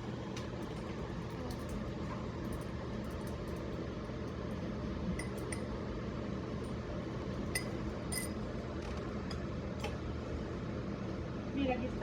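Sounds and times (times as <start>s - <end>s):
low background hum: 0.0s - 12.0s
glass clinks: 7.6s - 8.4s.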